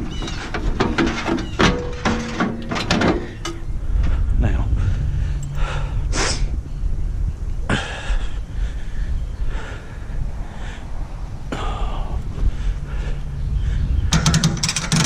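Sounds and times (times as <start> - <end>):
sharp scraping clanks: 0.0 - 3.7, 14.1 - 15.0
cable hoist low rumble: 0.6 - 15.0.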